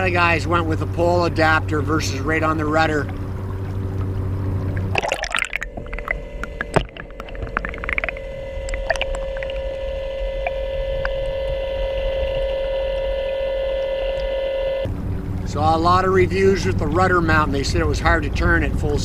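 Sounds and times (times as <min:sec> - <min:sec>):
water splashing: 0:00.0 - 0:11.5
electric boat motor whine: 0:00.0 - 0:18.7.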